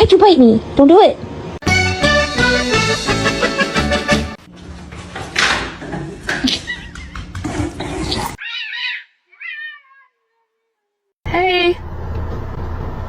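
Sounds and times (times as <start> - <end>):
cat meowing: 8.4 - 10.9.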